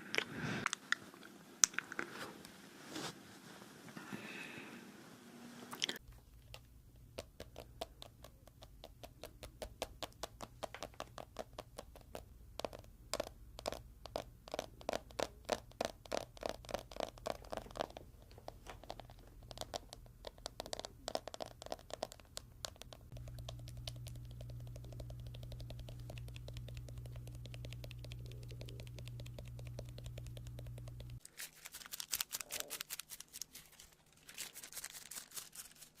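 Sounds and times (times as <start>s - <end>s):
clicking and scratching: 6.4s - 36.0s
steady low hum: 22.3s - 31.2s.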